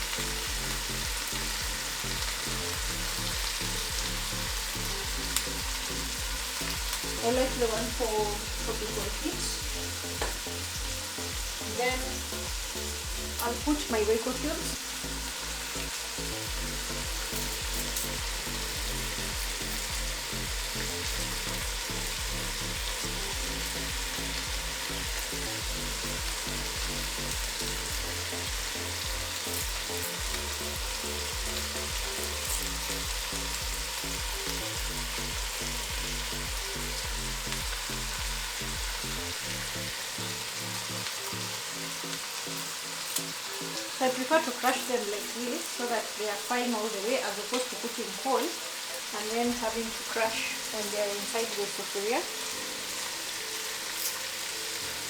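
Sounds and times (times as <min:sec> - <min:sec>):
food sizzling in a pot: 0:00.0 - 0:55.0.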